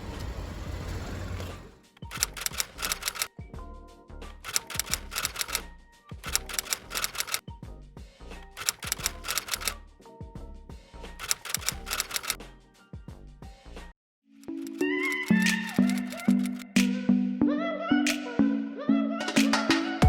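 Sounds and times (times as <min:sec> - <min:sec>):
clicking percussion: 0:02.0 - 0:03.3, 0:04.4 - 0:05.6, 0:06.2 - 0:07.4, 0:08.6 - 0:09.8, 0:11.2 - 0:12.4, 0:14.4 - 0:17.0.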